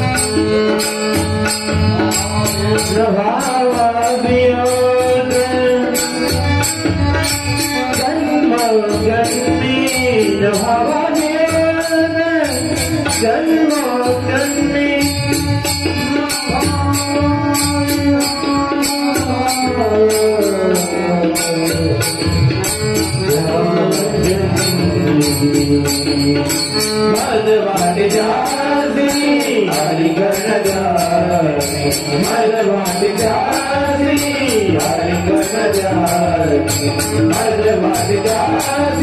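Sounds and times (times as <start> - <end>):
man singing: 0.0 - 39.0.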